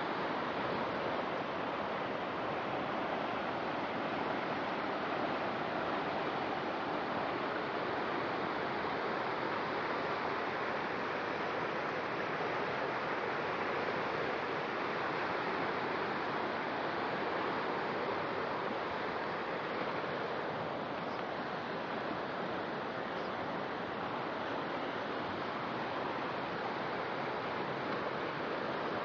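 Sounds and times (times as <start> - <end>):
river water rushing: 0.0 - 29.0.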